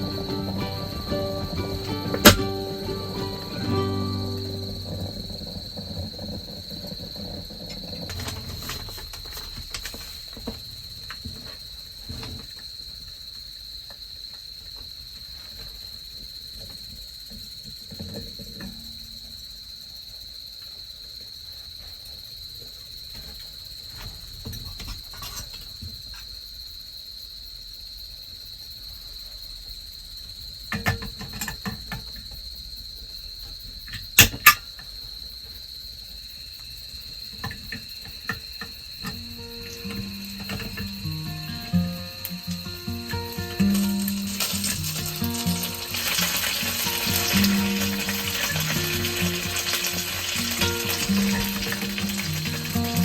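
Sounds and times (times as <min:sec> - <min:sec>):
crickets chirping: 0:00.0 - 0:53.0.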